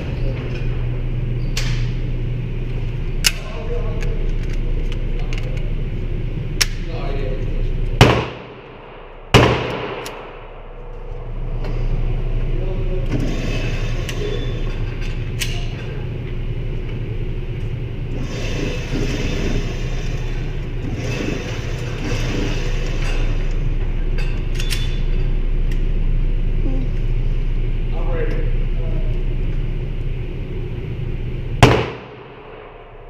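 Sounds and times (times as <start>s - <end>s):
steady low rumble: 0.0s - 33.0s
faint gunshots: 8.0s - 10.5s, 31.6s - 33.0s
gunshots echoing: 8.0s - 11.0s, 31.6s - 33.0s.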